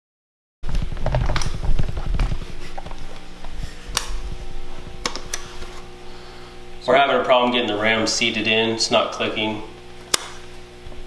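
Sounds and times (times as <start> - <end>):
low handling rumble: 0.6 - 9.8
faint steady hum: 0.7 - 11.0
sharp clicks and taps: 5.0 - 5.6, 10.1 - 10.4.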